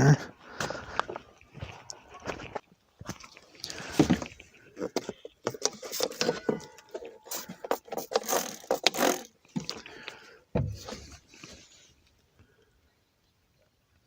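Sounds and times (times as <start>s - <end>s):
spray bottle hissing bursts: 7.3s - 9.0s.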